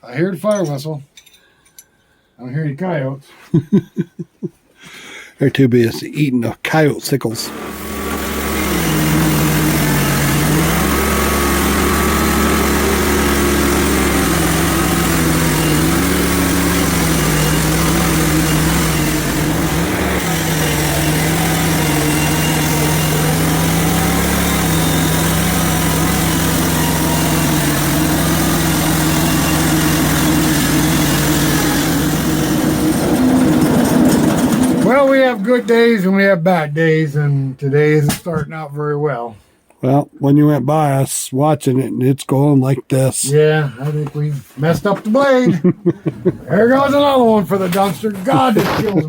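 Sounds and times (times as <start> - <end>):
sawmill engine running: 7.4 - 36.1, 46.5 - 49.0.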